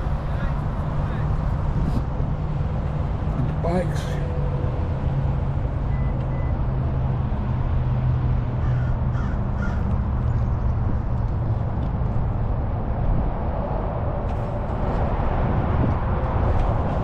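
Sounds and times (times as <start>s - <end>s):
low engine hum: 0.0s - 17.0s
crow cawing: 8.6s - 9.9s.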